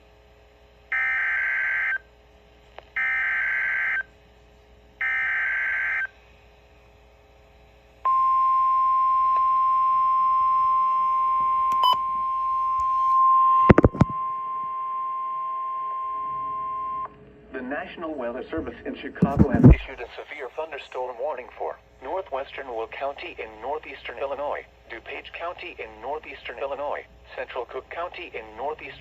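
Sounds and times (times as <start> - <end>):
steady alarm tone: 0.9 - 2.0, 3.0 - 4.1, 5.0 - 6.1.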